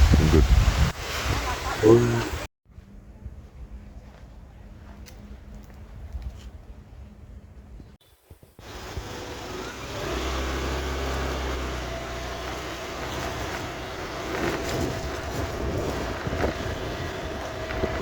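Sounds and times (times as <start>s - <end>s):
road traffic noise: 8.6s - 18.0s
vehicle engine passing close: 8.6s - 18.0s.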